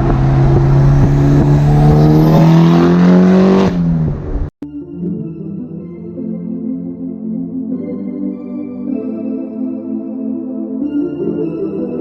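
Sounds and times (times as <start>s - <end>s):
turbocharged car engine accelerating: 0.0s - 4.5s
soft background music: 4.6s - 12.0s.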